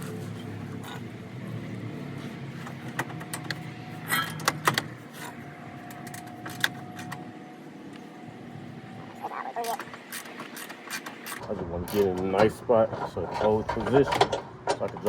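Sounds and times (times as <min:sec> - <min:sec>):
hand tools and metal parts clinking: 0:00.0 - 0:07.2, 0:09.6 - 0:15.0.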